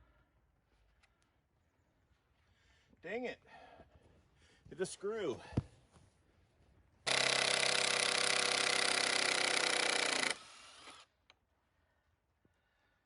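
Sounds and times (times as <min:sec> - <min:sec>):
power tool motor running: 0:07.1 - 0:11.1.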